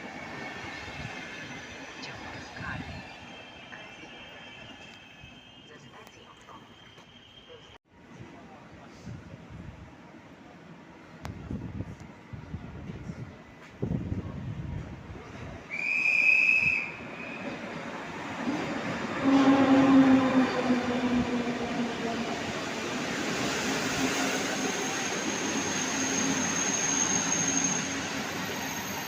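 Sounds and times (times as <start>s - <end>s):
faint train wheel squeal: 0.1s - 7.8s, 24.0s - 29.0s
train rolling: 10.4s - 29.0s
short high whistle: 15.7s - 17.4s.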